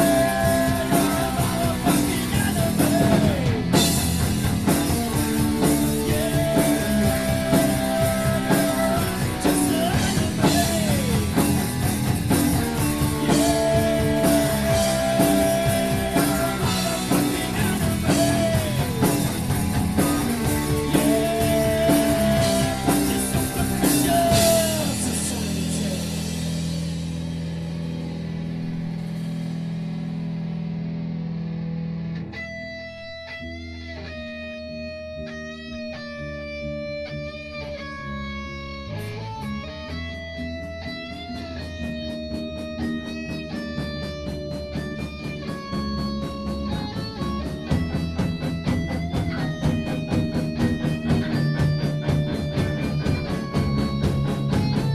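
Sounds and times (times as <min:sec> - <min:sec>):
rock band playing: 0:00.0 - 0:54.9
guitar picking single notes: 0:27.1 - 0:54.9.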